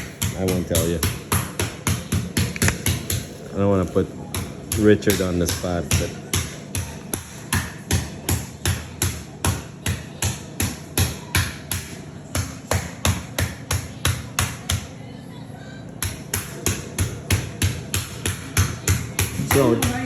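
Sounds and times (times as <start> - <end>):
meat tenderizer pounding chicken: 0.0 - 3.3.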